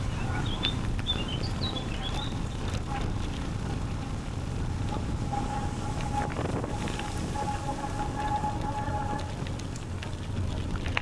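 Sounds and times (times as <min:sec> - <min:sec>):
small birds chirping: 0:00.0 - 0:02.7
bicycle tyres rolling on path: 0:00.0 - 0:11.0
wind on microphone: 0:00.0 - 0:11.0.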